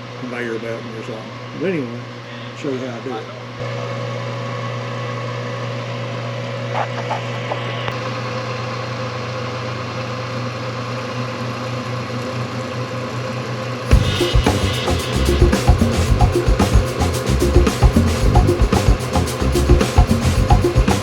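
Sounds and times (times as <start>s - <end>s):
milling machine humming: 13.9s - 21.0s.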